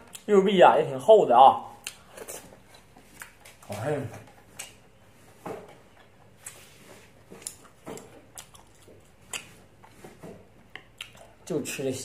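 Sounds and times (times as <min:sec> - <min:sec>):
person chewing wetly: 0:01.8 - 0:05.0, 0:05.8 - 0:10.0, 0:10.6 - 0:11.5.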